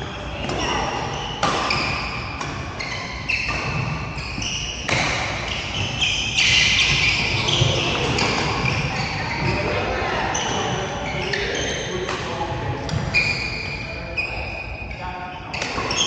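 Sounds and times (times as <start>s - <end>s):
shoes squeaking on court floor: 0.0s - 16.0s
rackets striking shuttlecock: 4.8s - 7.2s.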